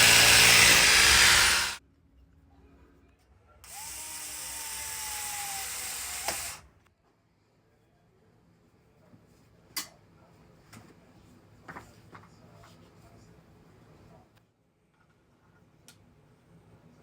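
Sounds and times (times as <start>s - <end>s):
drill click: 0.0s - 1.8s, 3.7s - 6.6s
power drill drilling into wall: 0.0s - 1.8s, 3.7s - 6.6s.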